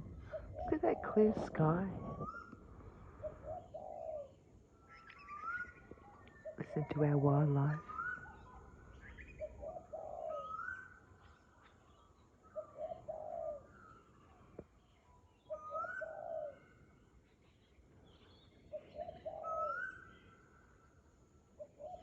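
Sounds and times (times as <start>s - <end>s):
faint bird chirps: 0.0s - 22.0s
bird whistled call: 10.3s - 11.0s, 15.5s - 16.5s.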